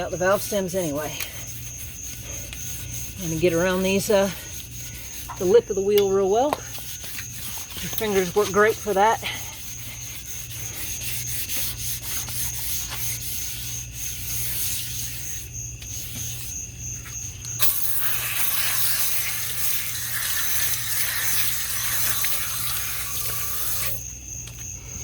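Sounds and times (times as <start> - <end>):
hand sanding with sandpaper: 0.0 - 16.6
crickets chirping: 0.0 - 25.0.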